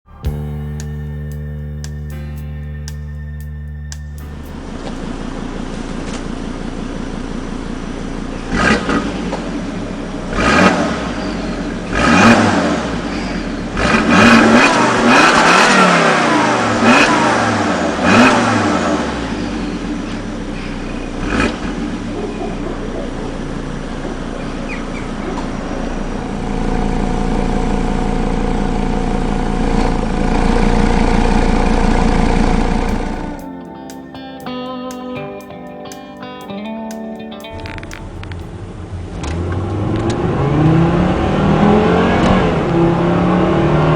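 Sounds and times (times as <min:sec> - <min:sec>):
car engine revving: 0:08.5 - 0:20.2.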